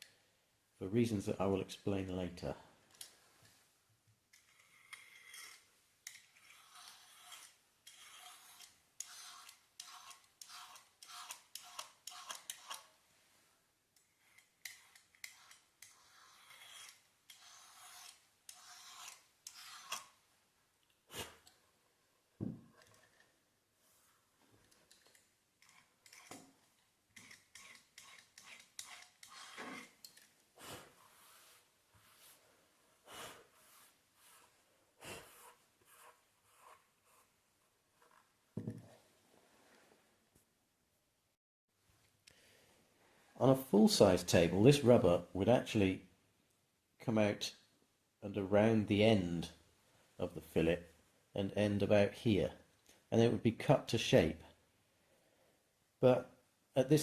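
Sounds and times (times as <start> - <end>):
knife scraping wooden rail: 4.4 - 12.9, 14.4 - 20.2, 27.2 - 30.2.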